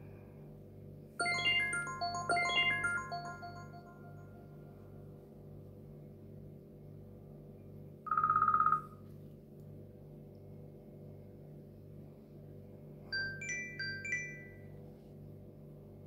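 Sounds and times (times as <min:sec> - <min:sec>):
trilling electronic beep: 0:01.2 - 0:04.5
bright chime notes: 0:01.2 - 0:04.9.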